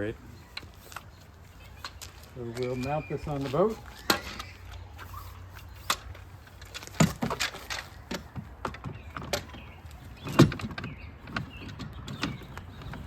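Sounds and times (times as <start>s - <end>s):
rudder hardware clicking and knocking: 5.8s - 13.0s.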